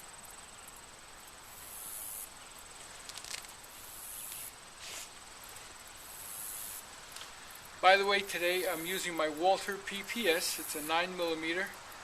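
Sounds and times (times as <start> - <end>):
insect trill: 0.0 - 12.0
high insect buzzing: 1.5 - 2.3, 2.9 - 5.2, 5.9 - 7.7.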